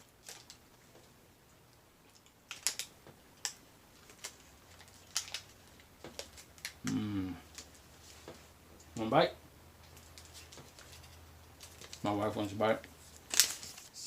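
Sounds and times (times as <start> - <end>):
plastic wrapper crinkling: 0.0 - 1.1, 2.1 - 8.5, 9.8 - 14.0
person humming: 6.8 - 7.5.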